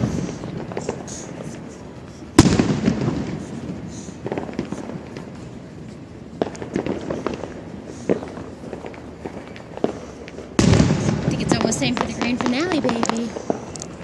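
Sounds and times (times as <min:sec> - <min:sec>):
firework crackling pops: 0:00.0 - 0:14.0
firework boom: 0:02.4 - 0:05.2, 0:10.6 - 0:13.1.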